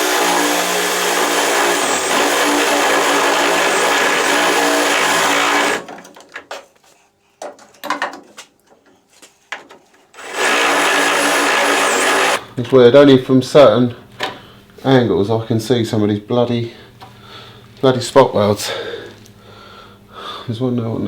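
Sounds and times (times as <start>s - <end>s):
drill drilling sheet metal: 0.0s - 5.9s, 10.2s - 12.4s.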